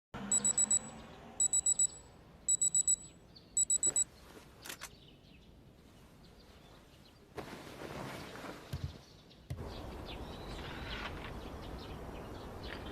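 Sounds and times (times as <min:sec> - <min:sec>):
alarm clock beeping: 0:00.3 - 0:04.1.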